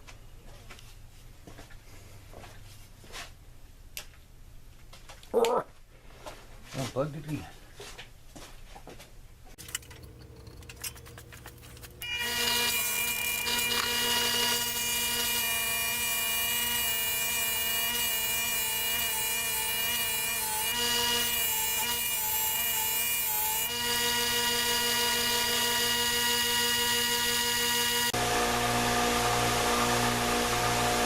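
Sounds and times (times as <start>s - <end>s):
belt sander motor whining: 9.6s - 31.0s.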